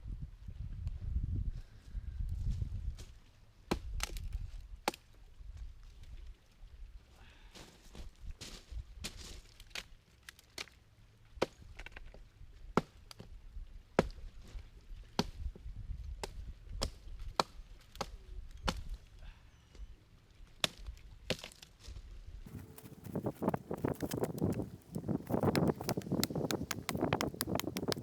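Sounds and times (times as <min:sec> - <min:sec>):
axe chopping wood: 0:22.5 - 0:28.0.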